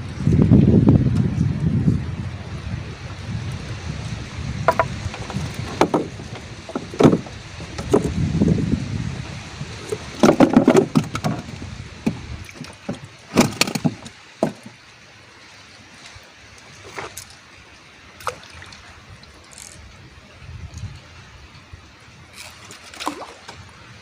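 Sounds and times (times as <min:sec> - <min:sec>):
sharp knocks and clatters: 0:04.6 - 0:08.2, 0:10.2 - 0:14.8.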